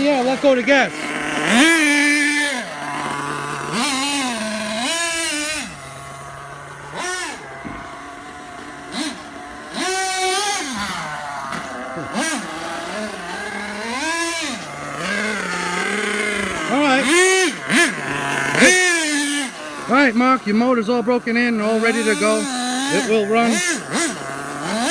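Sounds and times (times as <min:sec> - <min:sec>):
model car engine revving: 0:00.0 - 0:24.9.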